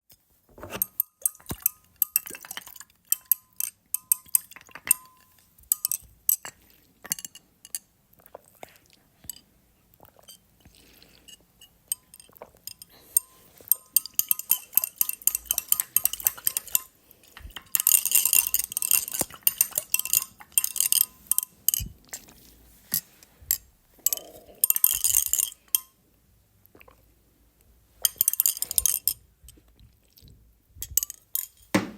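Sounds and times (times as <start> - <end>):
glass straw clinking against glass: 0.6 - 7.8, 11.1 - 22.3, 22.9 - 26.0, 28.0 - 29.2, 30.8 - 31.7.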